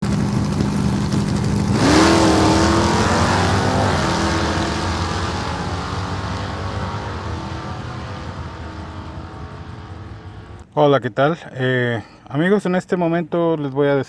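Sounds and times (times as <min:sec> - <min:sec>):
car engine revving: 0:00.0 - 0:10.6.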